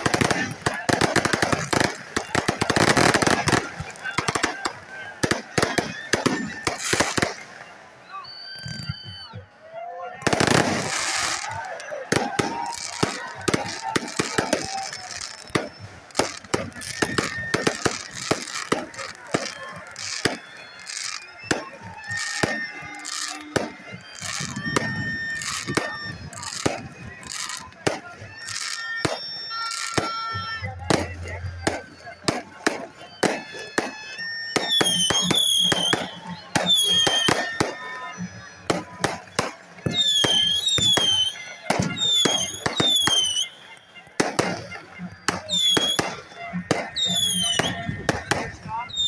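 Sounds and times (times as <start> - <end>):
fireworks cracking and popping: 0.0 - 9.5, 10.2 - 49.0
crowd murmur: 0.0 - 49.0.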